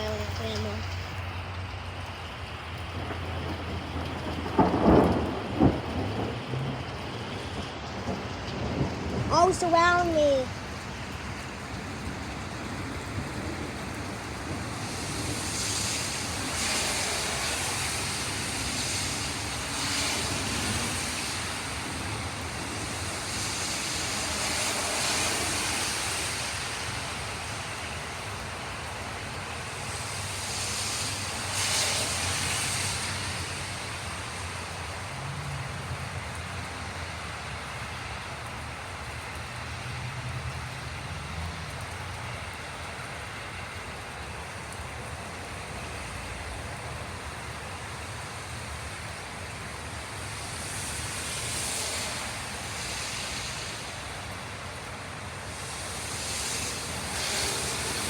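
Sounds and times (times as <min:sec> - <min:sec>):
rain falling: 0:00.0 - 0:58.0
low thunder rumble: 0:02.6 - 0:29.6.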